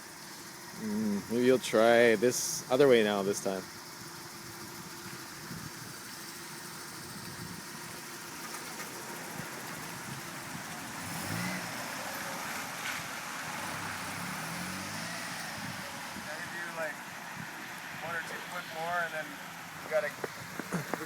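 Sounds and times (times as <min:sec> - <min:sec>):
rain and tyre spray hiss: 0:00.0 - 0:03.6, 0:07.6 - 0:21.0
car engine revving: 0:09.1 - 0:21.0.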